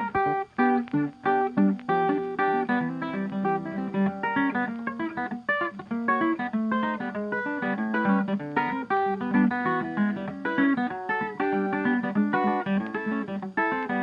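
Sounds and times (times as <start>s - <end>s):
acoustic guitar plucked notes: 0.0s - 14.0s.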